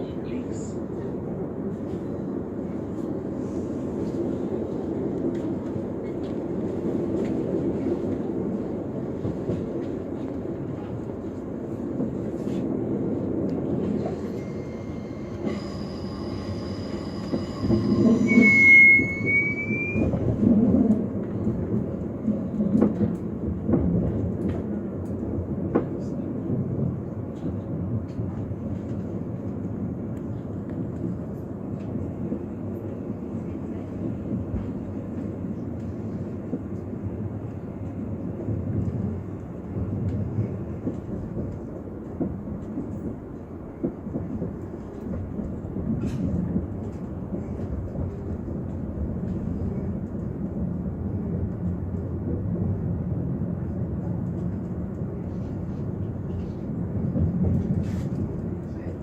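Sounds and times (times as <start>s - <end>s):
train wheels rumbling: 0.0s - 59.0s.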